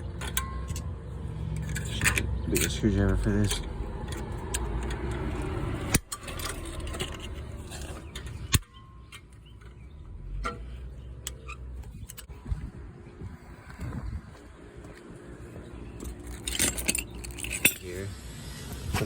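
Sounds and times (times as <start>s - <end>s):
low rumble: 11.8s - 17.4s.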